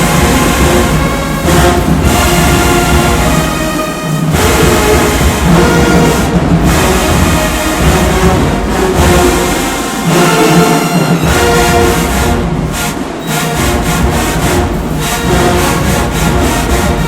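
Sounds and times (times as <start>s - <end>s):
brass chords: 0.0s - 17.0s.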